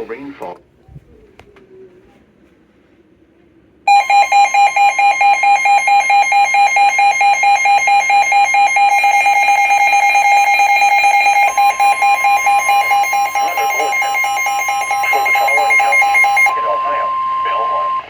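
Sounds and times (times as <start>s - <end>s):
electronic alarm warbling tone: 3.9s - 18.0s
second alarm tone: 3.9s - 18.0s.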